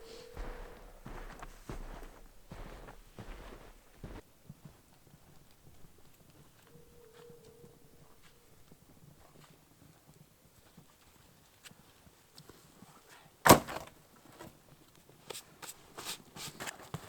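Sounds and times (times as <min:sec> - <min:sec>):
light irregular knocks and crunches: 0:00.0 - 0:04.2.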